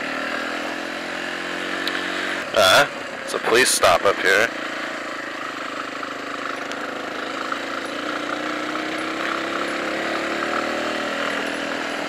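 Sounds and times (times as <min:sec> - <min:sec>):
motorcycle engine accelerating: 0:00.0 - 0:12.0.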